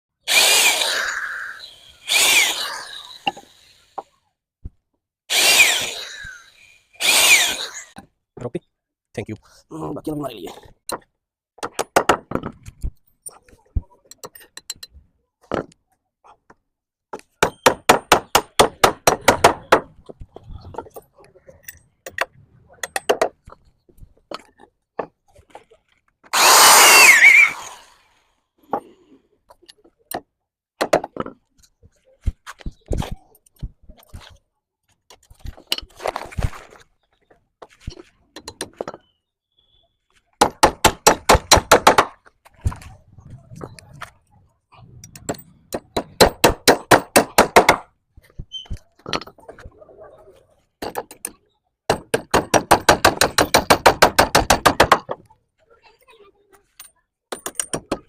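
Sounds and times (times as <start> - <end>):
power tool rasping on bamboo: 0.3 - 3.8, 5.3 - 8.0, 26.3 - 28.1.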